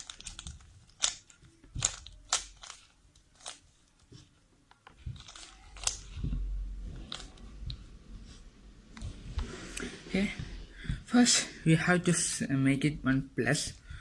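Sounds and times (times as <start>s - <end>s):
puzzle cube layers clicking: 0.0s - 3.7s, 4.8s - 6.4s.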